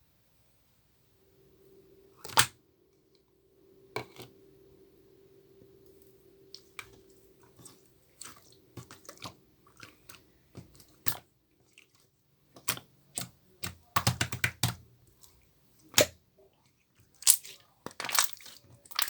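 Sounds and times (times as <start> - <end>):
faint steady hum: 0.0 - 19.0
sharp clicks and taps: 12.6 - 14.8.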